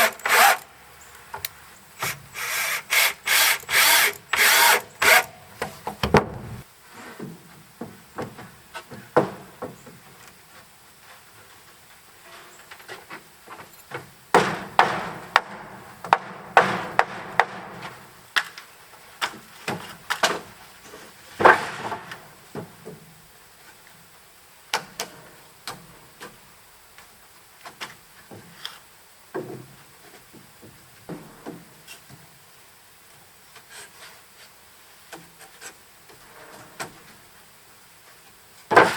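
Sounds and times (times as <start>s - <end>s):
wood scraping: 0.0s - 0.6s, 2.0s - 6.6s.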